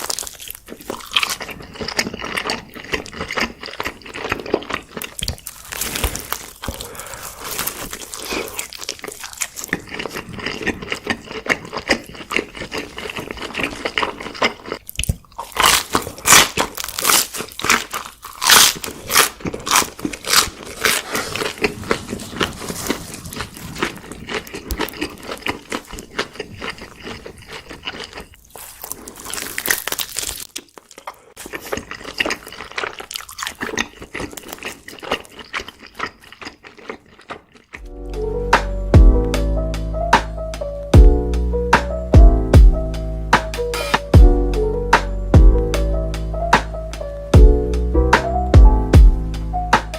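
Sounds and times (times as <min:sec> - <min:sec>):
crunchy food chewing: 0:00.0 - 0:39.3.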